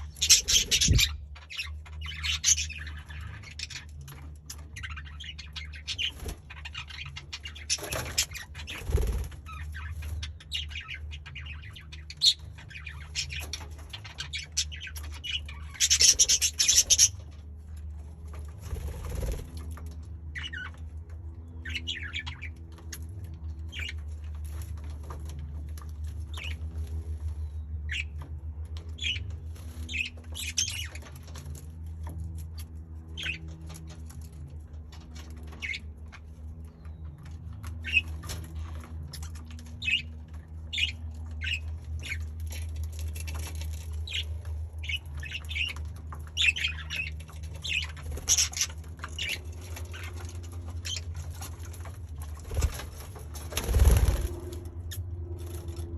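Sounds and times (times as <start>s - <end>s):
budgerigars chirping and squawking: 0.0s - 25.2s, 25.8s - 55.8s
wings flapping: 7.8s - 9.5s, 52.3s - 54.8s.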